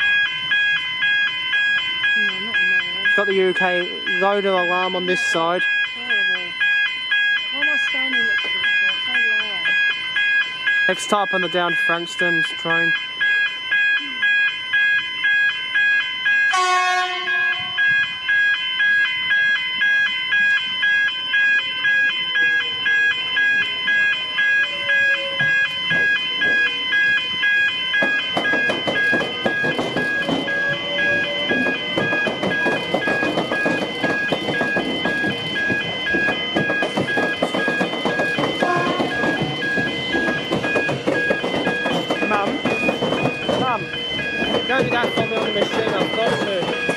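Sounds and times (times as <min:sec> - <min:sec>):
level crossing warning alarm: 0:00.0 - 0:46.9
train rumbling and clattering: 0:23.6 - 0:46.9
train wheels clicking over rail joints: 0:28.0 - 0:46.9.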